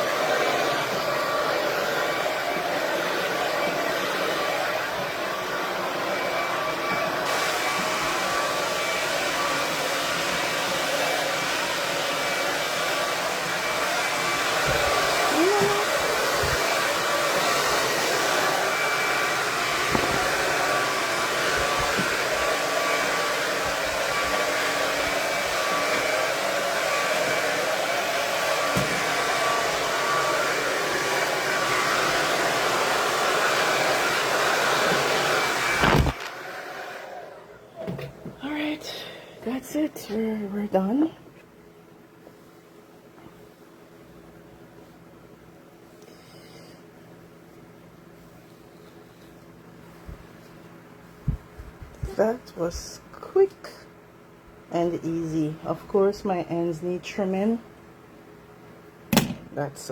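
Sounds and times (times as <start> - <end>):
hair dryer running: 0.0 - 38.8, 49.9 - 53.8, 59.1 - 59.9.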